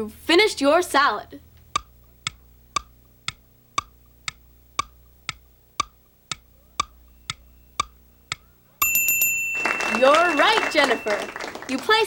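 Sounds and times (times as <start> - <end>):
countdown clock ticking: 1.7 - 8.6.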